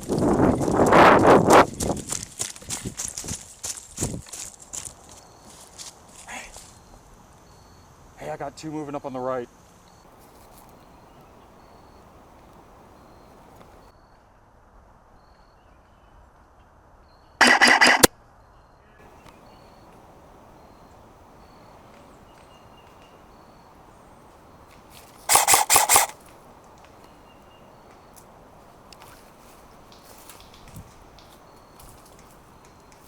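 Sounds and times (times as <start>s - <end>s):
airsoft gun bursts: 17.4s - 18.1s, 25.2s - 26.3s.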